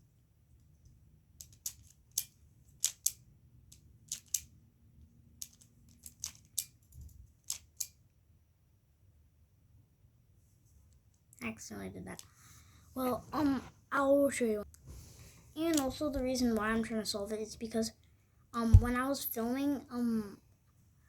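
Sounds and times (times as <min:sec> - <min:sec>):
plastic puzzle clicks: 0:01.4 - 0:04.5, 0:05.4 - 0:06.8, 0:07.4 - 0:08.0.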